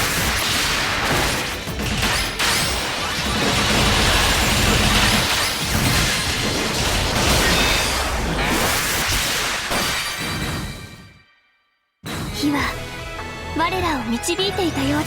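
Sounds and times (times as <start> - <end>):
crashing smashing impacts: 0.0 - 11.1
music: 11.0 - 15.0.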